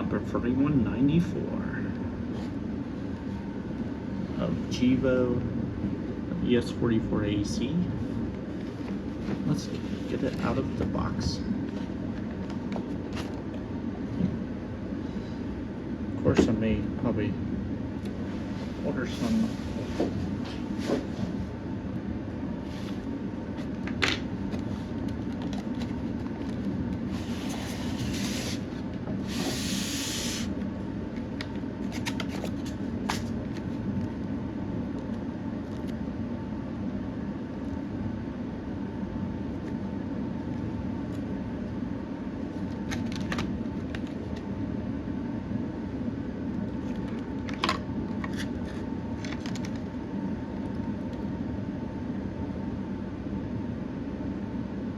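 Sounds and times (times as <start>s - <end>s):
low background hum: 0.0s - 54.9s.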